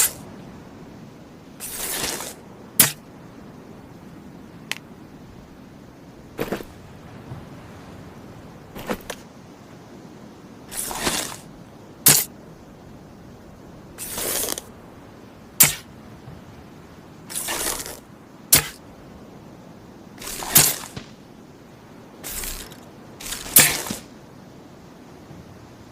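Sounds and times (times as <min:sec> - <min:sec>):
arrow sharp snap: 0:01.6 - 0:03.0, 0:12.1 - 0:12.3, 0:15.6 - 0:15.9, 0:18.6 - 0:18.8, 0:20.2 - 0:21.2, 0:22.3 - 0:24.1.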